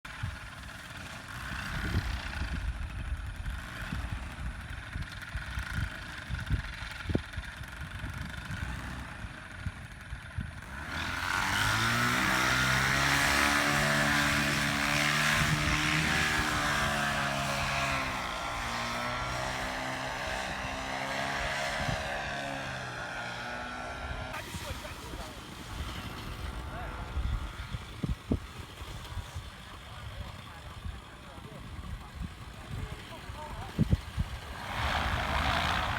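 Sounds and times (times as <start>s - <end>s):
paramotor engine and propeller: 0.0s - 35.9s
wind buffeting microphone: 9.7s - 23.4s, 24.0s - 35.9s.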